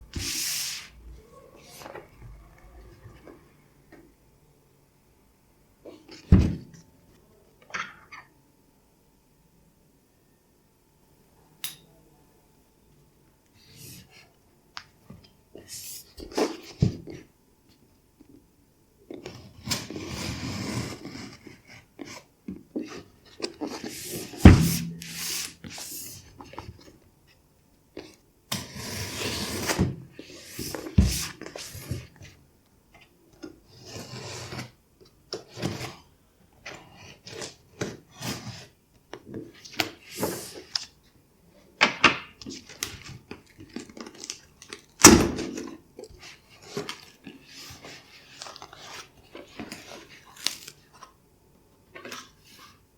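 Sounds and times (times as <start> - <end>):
sharp thuds: 24.4 - 25.5.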